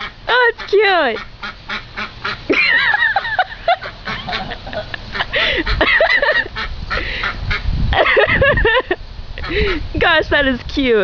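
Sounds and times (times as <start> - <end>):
ducks quacking: 0.0 - 7.7, 9.4 - 9.8.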